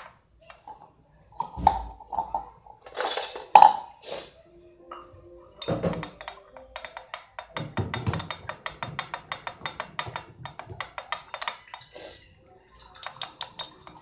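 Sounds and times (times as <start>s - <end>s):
spoon stirring in a glass: 5.0s - 14.0s.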